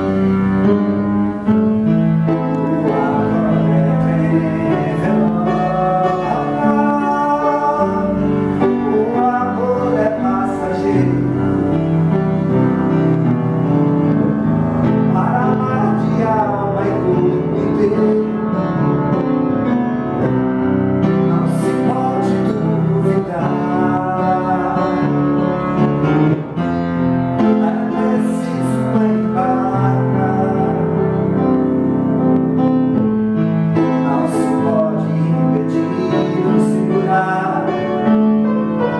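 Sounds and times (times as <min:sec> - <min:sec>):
piano: 0:00.0 - 0:38.9
person singing: 0:02.3 - 0:12.9, 0:14.8 - 0:19.1, 0:21.1 - 0:25.8, 0:27.4 - 0:31.6, 0:33.7 - 0:38.9.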